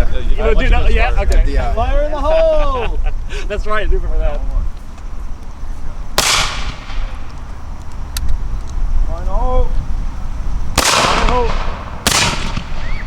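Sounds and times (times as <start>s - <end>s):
rifle gunshot with echo: 6.2s - 7.3s, 10.8s - 13.0s.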